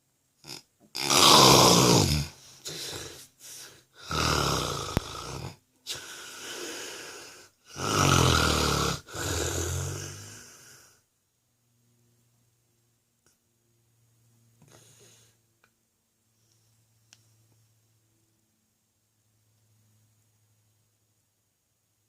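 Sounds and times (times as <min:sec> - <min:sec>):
man snoring: 0:00.4 - 0:11.0
soft breath: 0:02.3 - 0:04.1, 0:05.8 - 0:07.6, 0:14.6 - 0:15.5.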